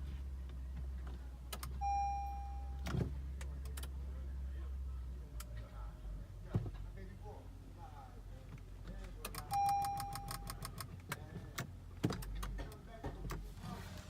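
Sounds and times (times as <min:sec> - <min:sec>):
electronic warning beep: 0:01.8 - 0:02.8, 0:09.5 - 0:10.5.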